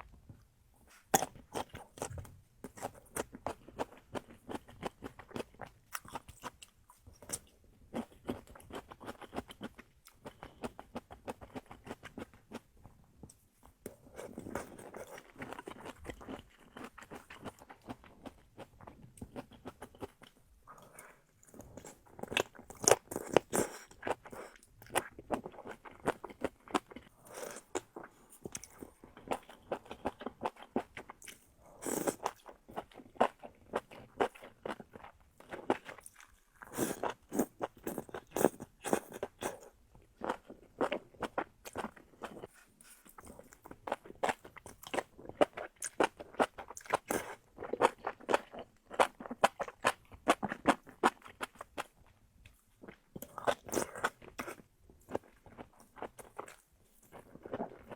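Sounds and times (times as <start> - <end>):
crunching and chewing: 14.2 - 57.9.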